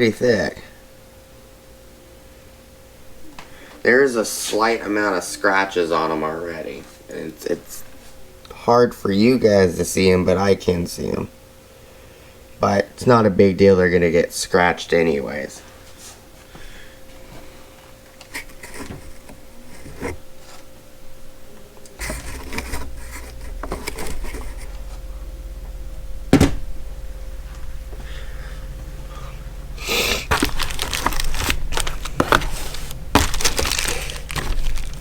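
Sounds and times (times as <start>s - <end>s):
low steady hum: 0.0s - 35.0s
packaging rustling: 22.0s - 24.8s, 30.2s - 35.0s.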